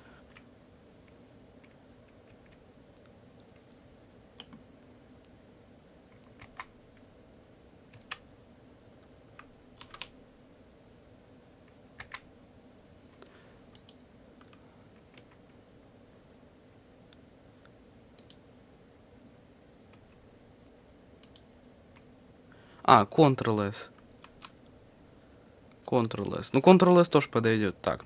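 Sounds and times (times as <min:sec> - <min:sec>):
mechanical keyboard keys pressed: 0:06.2 - 0:06.7, 0:09.4 - 0:10.1, 0:12.0 - 0:12.2.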